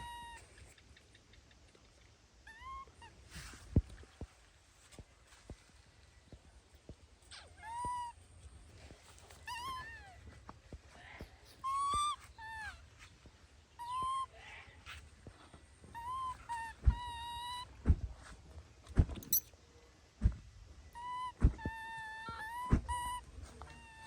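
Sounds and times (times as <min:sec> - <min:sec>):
baby monkey crying calls: 0:00.0 - 0:00.6, 0:02.5 - 0:03.1, 0:07.4 - 0:08.2, 0:09.4 - 0:10.1, 0:11.6 - 0:12.8, 0:13.8 - 0:14.4, 0:15.9 - 0:17.6, 0:21.0 - 0:24.0.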